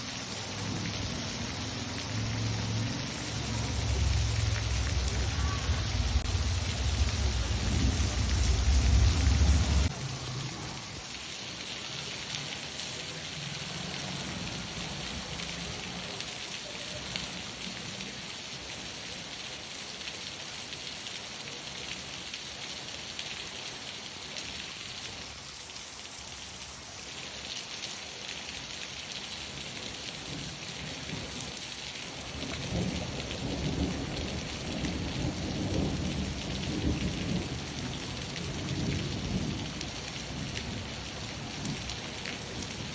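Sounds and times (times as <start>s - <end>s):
steady rain falling: 0.0s - 42.9s
thunder rumbling: 0.5s - 10.9s, 32.4s - 40.9s.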